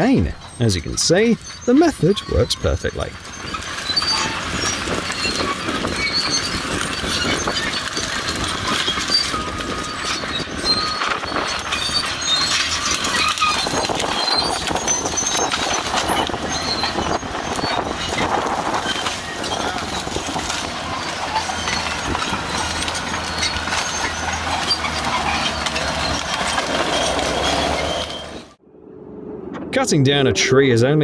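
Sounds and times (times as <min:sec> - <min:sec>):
clanking steel tracks and chain: 0:00.0 - 0:28.6
high metallic squeals: 0:00.4 - 0:31.0
low rumble: 0:28.6 - 0:31.0.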